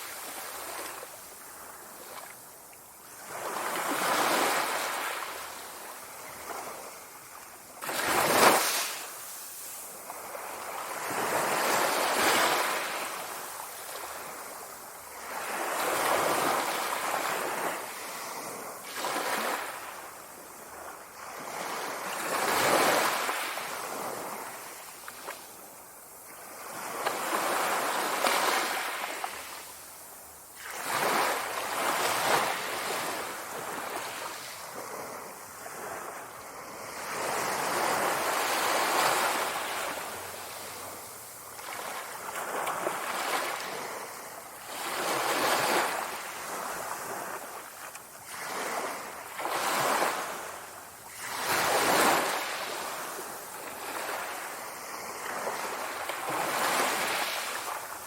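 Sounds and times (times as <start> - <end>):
sea waves breaking: 7.8 - 14.3.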